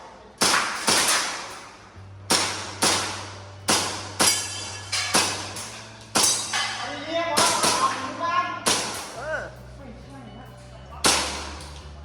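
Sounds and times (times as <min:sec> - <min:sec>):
airsoft pistol firing: 0:00.4 - 0:01.6, 0:02.3 - 0:04.4, 0:07.4 - 0:08.1, 0:08.7 - 0:09.2, 0:11.0 - 0:11.6.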